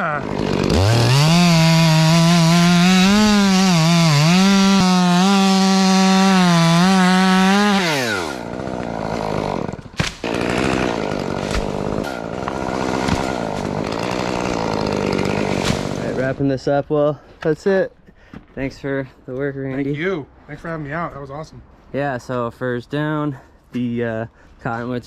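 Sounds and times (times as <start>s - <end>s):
chainsaw revving: 0.0s - 16.4s.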